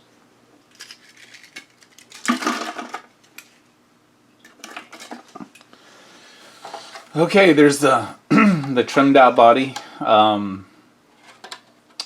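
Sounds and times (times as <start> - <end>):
plastic offcuts clattering and rustling: 0.7 - 3.6, 4.4 - 5.6, 11.2 - 12.0.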